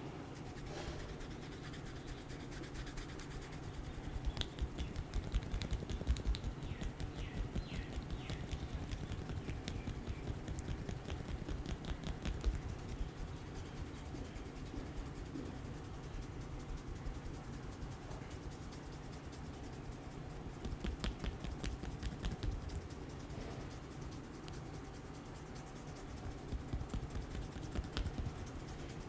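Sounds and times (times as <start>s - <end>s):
percussive massage taps: 4.2s - 13.1s, 20.6s - 22.8s, 26.5s - 28.4s.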